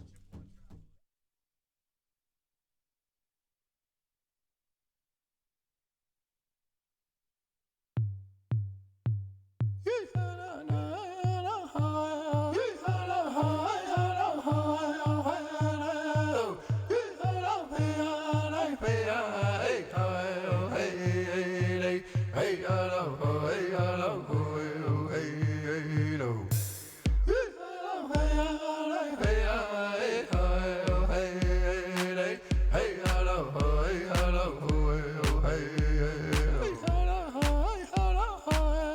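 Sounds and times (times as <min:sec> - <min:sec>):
deep drum beat: 0:08.0 - 0:19.6, 0:24.4 - 0:27.5, 0:28.2 - 0:28.6, 0:29.2 - 0:29.7, 0:30.4 - 0:38.9
person chant-like singing: 0:09.9 - 0:38.9.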